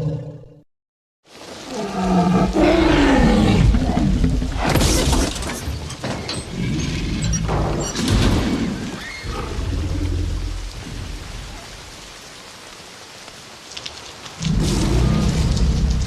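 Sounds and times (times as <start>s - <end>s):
dinosaur roar: 0.0s - 0.6s, 1.6s - 4.7s, 9.2s - 11.6s, 14.4s - 16.0s.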